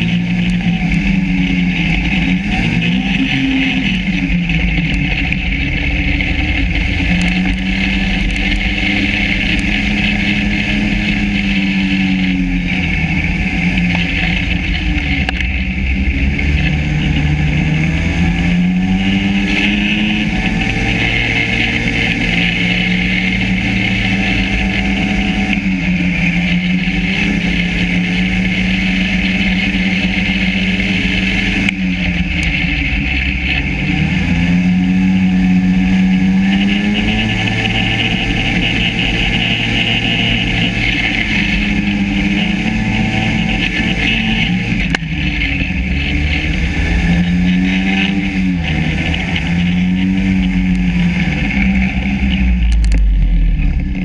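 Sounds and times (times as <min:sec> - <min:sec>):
snowmobile engine revving: 0:00.0 - 0:54.0.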